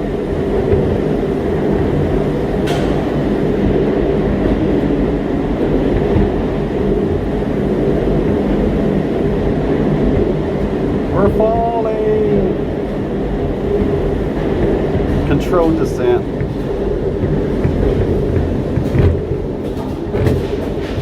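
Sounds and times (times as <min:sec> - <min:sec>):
tram mechanical rumble: 0:00.0 - 0:21.0.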